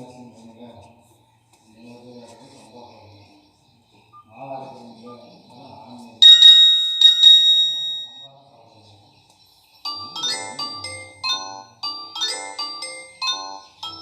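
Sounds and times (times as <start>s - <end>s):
bright phone ringtone chime: 6.2s - 8.2s
melodic phone ringtone: 6.2s - 8.2s, 9.9s - 14.0s.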